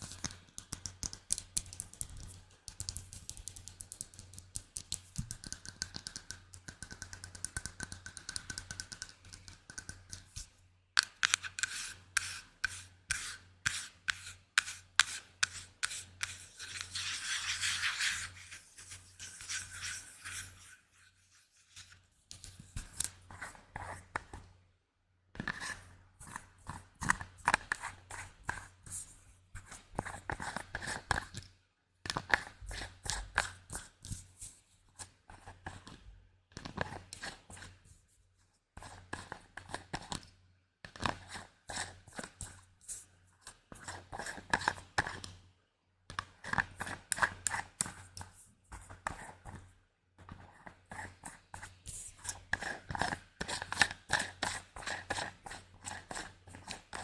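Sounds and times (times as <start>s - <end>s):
crisp tapping and clicking on objects: 0.0s - 11.6s.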